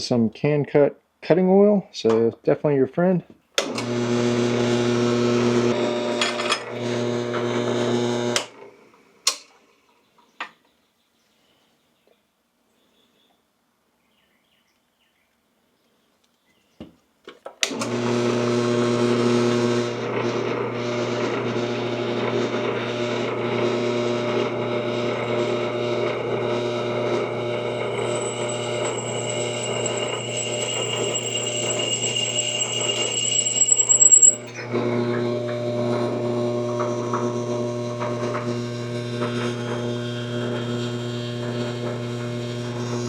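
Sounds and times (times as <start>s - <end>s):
drill press motor hum: 3.7s - 8.5s, 17.7s - 43.0s
drill bit drilling through steel: 20.8s - 38.1s.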